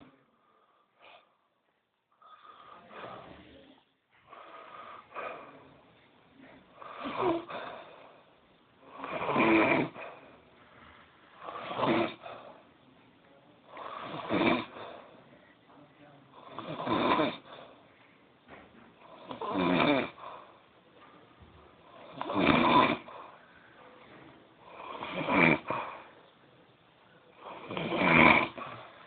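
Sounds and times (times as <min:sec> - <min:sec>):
person snoring: 0:02.2 - 0:03.7, 0:06.4 - 0:12.6, 0:13.6 - 0:15.2, 0:16.3 - 0:17.8, 0:19.0 - 0:20.6, 0:21.9 - 0:23.4, 0:24.6 - 0:26.2, 0:27.3 - 0:29.0.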